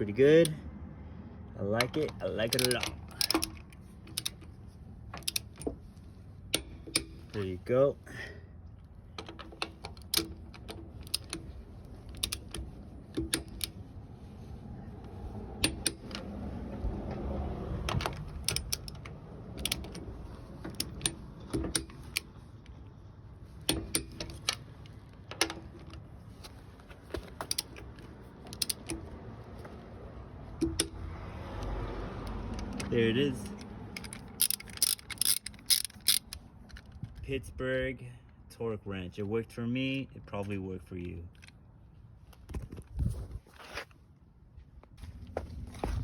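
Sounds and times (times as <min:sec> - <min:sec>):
torque wrench clicking: 0:02.5 - 0:04.4, 0:05.2 - 0:05.7, 0:28.5 - 0:29.0, 0:33.5 - 0:36.8.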